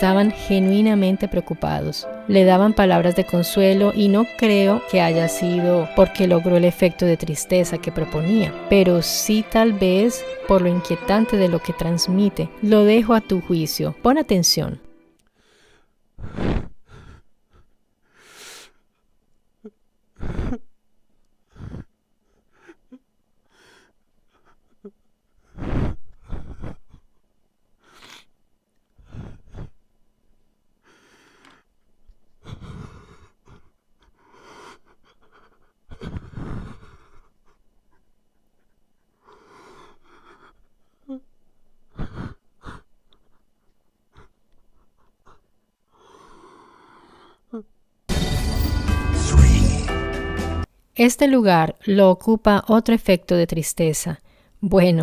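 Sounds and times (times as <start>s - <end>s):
gasping wheezing breaths: 32.4s - 37.6s, 45.2s - 47.7s.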